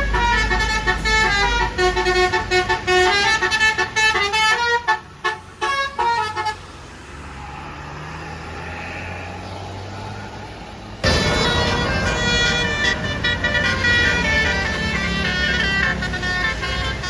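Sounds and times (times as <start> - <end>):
bus engine humming: 0.0 - 17.0
air horn playing a fast tune: 11.0 - 17.0.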